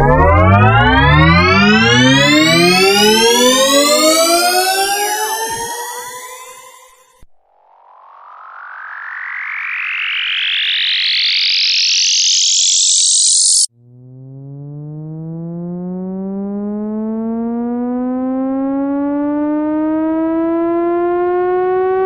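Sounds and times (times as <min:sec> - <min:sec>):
rising whooshing sweep: 0:00.0 - 0:07.0, 0:08.2 - 0:13.7
low siren-like tone winding up: 0:00.0 - 0:07.1, 0:07.7 - 0:22.0.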